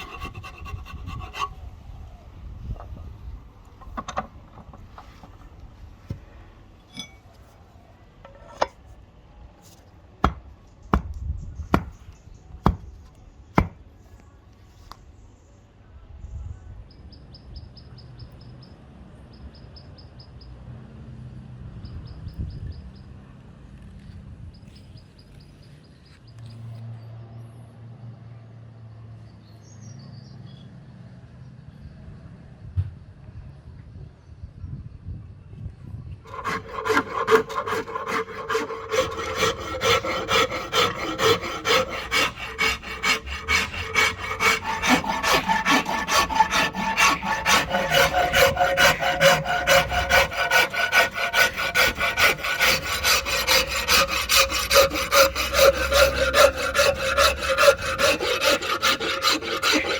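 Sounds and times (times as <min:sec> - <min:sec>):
tool striking wood: 0:10.2 - 0:12.0, 0:12.6 - 0:12.9, 0:13.6 - 0:13.8, 0:36.3 - 0:59.9.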